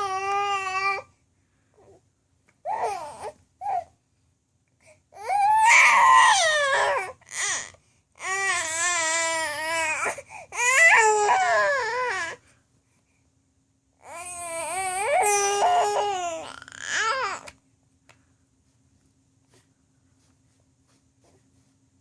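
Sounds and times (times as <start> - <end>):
baby wailing: 0.0 - 1.1, 2.7 - 3.9, 5.2 - 12.4, 14.0 - 17.5.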